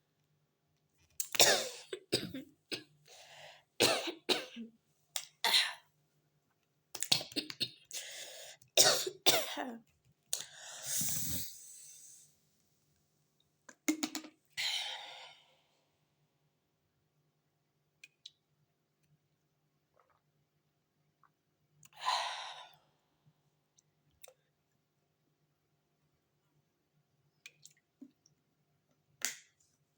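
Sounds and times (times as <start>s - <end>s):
person coughing: 1.4s - 2.9s, 3.8s - 4.7s, 8.8s - 9.8s.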